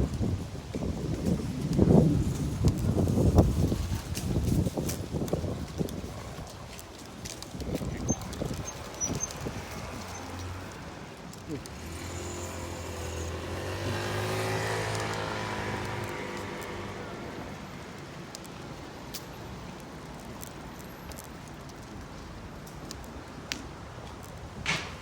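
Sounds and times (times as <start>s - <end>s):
vehicle driving past: 11.8s - 17.7s.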